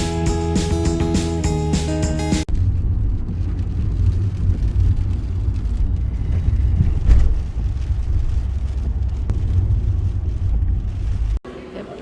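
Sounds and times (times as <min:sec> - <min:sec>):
steady low rumble: 0:02.4 - 0:11.4.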